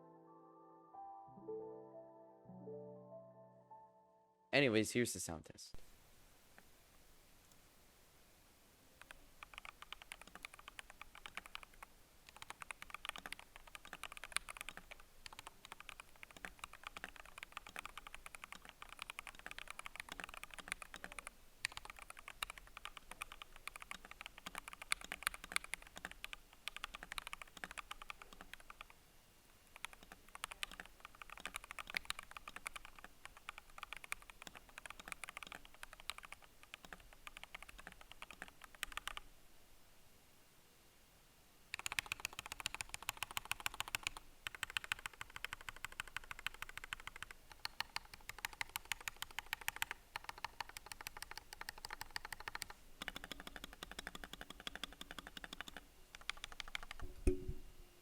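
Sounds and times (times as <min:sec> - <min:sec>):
mechanical keyboard typing: 0:09.0 - 0:29.0, 0:29.7 - 0:39.2, 0:41.7 - 0:57.2.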